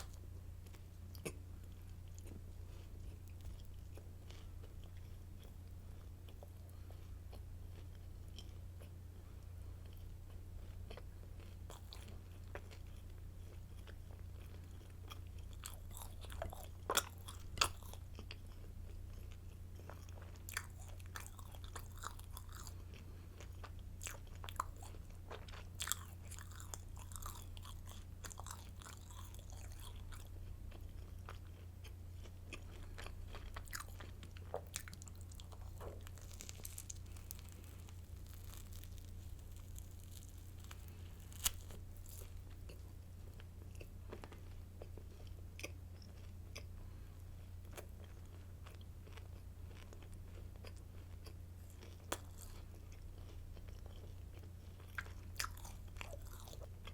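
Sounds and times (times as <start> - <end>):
crunchy bread bites and chewing: 0.0 - 56.9
low hum: 32.0 - 45.6
crust crackling: 33.3 - 43.5.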